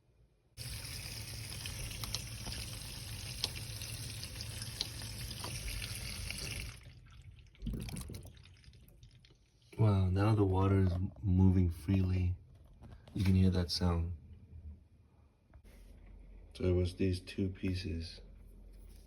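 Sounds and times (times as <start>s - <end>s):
drain pump running: 0.6s - 6.8s
water rushing through drain: 0.6s - 9.8s.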